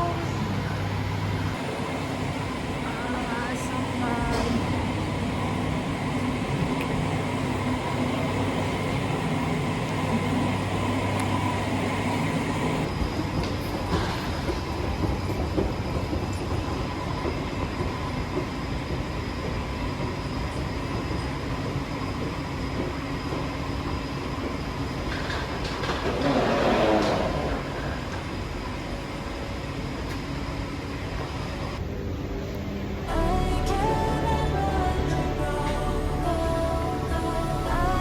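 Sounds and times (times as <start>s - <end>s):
passenger train rumbling: 0.0s - 38.0s.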